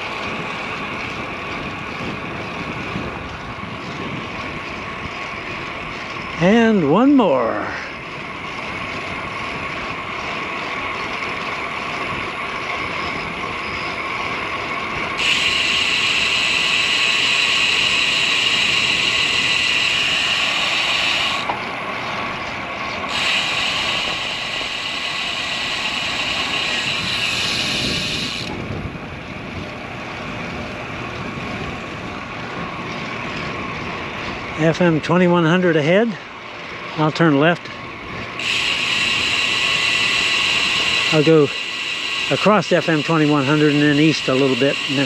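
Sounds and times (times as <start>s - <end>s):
wind noise: 0.0s - 35.2s
bicycle freehub buzzing: 0.0s - 45.0s.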